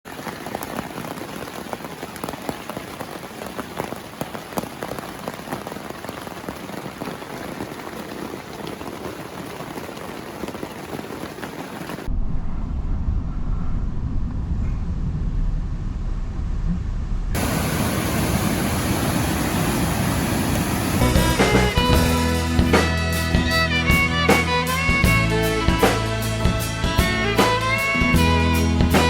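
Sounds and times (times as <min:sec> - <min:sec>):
heavy rain: 0:00.0 - 0:12.1, 0:17.3 - 0:29.0
low rumble: 0:12.1 - 0:18.1.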